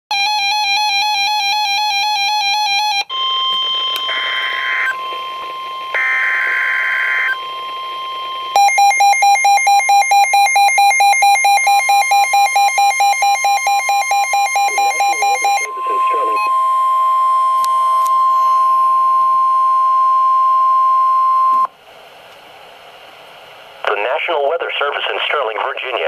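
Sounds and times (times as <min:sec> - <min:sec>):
buzzy electronic alarm beeps: 0:00.1 - 0:21.7
steady warning tone: 0:00.9 - 0:21.7
screechy data tones: 0:03.2 - 0:19.3
radio hiss: 0:03.5 - 0:08.5, 0:14.7 - 0:16.5, 0:23.8 - 0:26.0.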